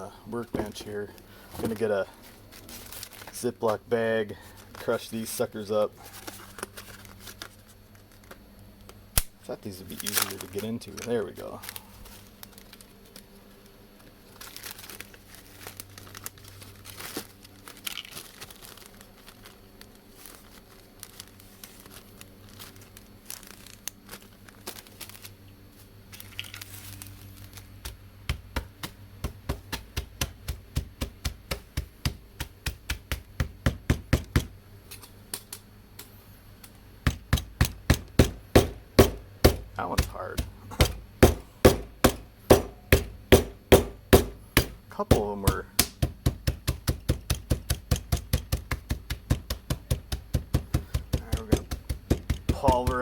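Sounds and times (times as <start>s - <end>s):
plastic bag crinkling: 0.0s - 8.4s, 9.5s - 28.2s
pellets pounded in bag: 26.2s - 34.6s, 37.0s - 53.0s.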